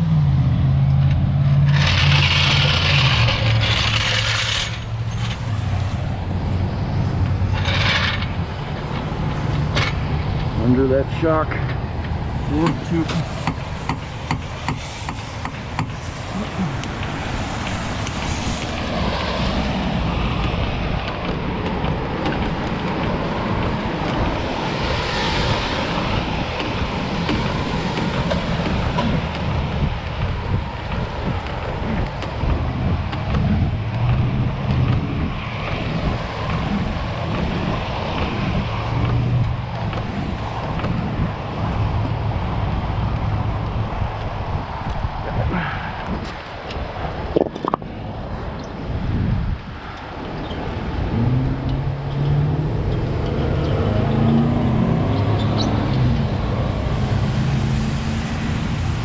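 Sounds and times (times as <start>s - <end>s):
low traffic rumble: 0.0s - 59.0s
tyres hissing on wet road: 11.5s - 33.0s, 53.8s - 59.0s.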